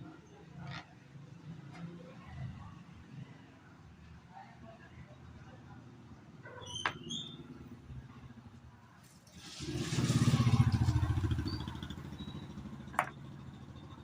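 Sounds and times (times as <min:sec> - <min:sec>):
vehicle engine passing by: 0:09.4 - 0:14.0.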